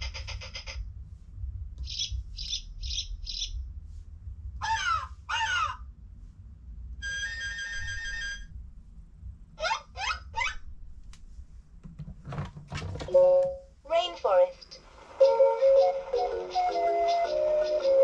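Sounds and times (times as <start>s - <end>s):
low steady hum: 0.0s - 18.0s
toy speaker animal sounds: 9.6s - 10.6s, 13.1s - 18.0s.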